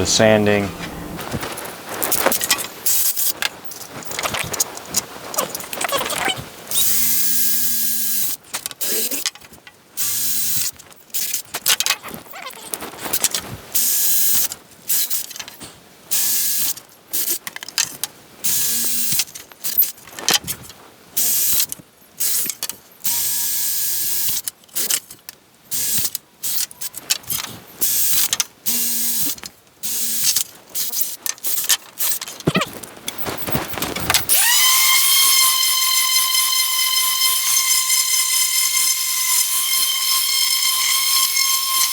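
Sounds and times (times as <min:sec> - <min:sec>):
high whistling tone: 0:34.4 - 0:41.9
sanding wood: 0:34.4 - 0:41.9.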